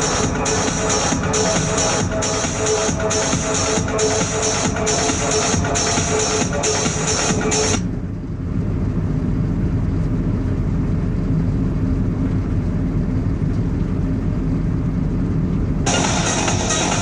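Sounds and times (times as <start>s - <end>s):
car engine and tyre rumble: 0.0s - 17.0s.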